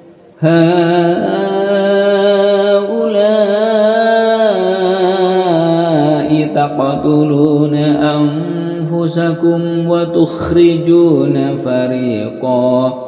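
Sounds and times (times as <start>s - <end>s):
man chanting recitation: 0.4s - 13.0s.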